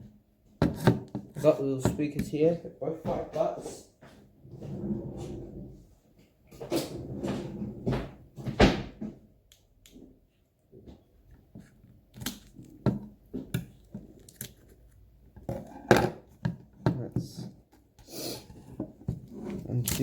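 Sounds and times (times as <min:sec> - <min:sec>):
hard objects knocking and clattering: 0:15.3 - 0:20.0.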